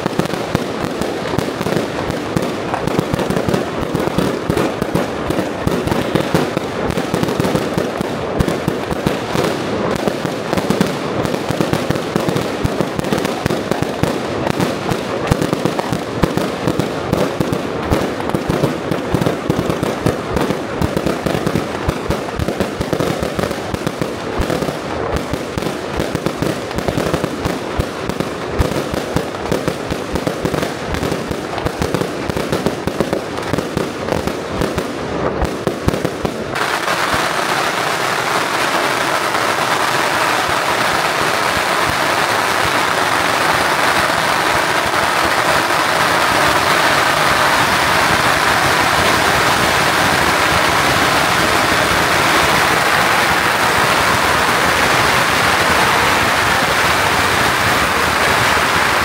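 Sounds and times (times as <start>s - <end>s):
firecrackers and fireworks banging: 0.0s - 59.0s.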